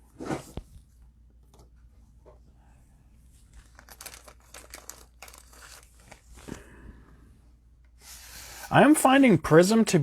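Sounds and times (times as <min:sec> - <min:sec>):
cellophane wrapper crinkling: 0:03.5 - 0:06.6.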